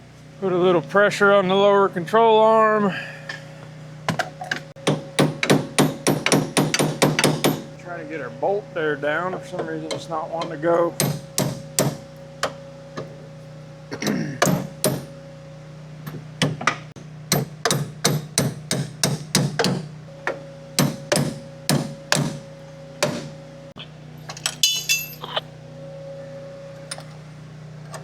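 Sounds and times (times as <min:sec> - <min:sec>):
hammer striking bolt: 0:04.1 - 0:07.7, 0:09.6 - 0:13.1, 0:14.0 - 0:15.1, 0:16.1 - 0:22.4, 0:23.0 - 0:23.3.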